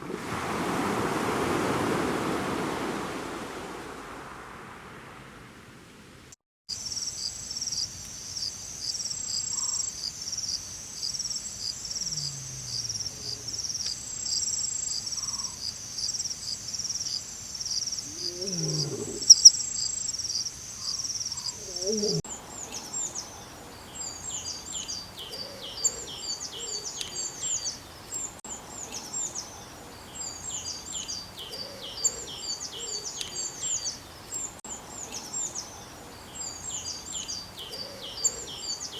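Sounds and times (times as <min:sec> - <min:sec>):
insects trilling: 0:06.7 - 0:38.9
low sliding animal calls: 0:11.9 - 0:13.7, 0:18.0 - 0:19.5, 0:21.4 - 0:22.2
bird chirping: 0:17.6 - 0:38.9.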